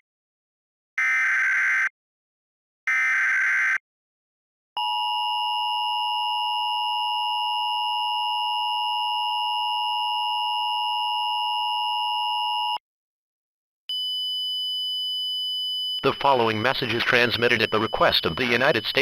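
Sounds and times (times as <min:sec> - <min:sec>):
two-tone alarm: 0:01.0 - 0:01.9, 0:02.9 - 0:03.8, 0:04.8 - 0:12.8, 0:13.9 - 0:19.0.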